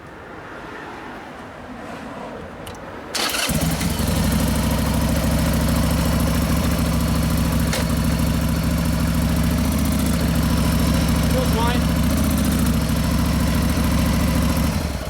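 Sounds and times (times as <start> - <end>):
motorcycle engine cranking: 2.7 - 15.0
motorcycle engine idling: 3.2 - 15.0.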